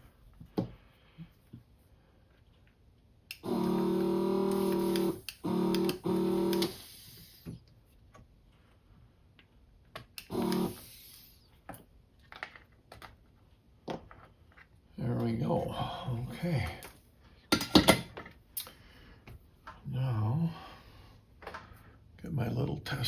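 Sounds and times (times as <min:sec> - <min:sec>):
desoldering vacuum pump buzzing: 0:03.3 - 0:07.5, 0:10.2 - 0:11.4
small clicks: 0:04.5 - 0:06.8, 0:10.1 - 0:11.3.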